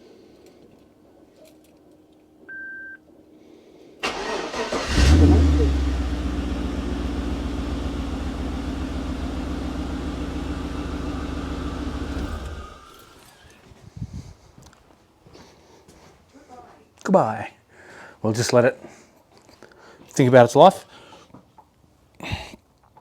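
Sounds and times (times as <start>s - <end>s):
car engine starting and idling: 4.0s - 13.7s.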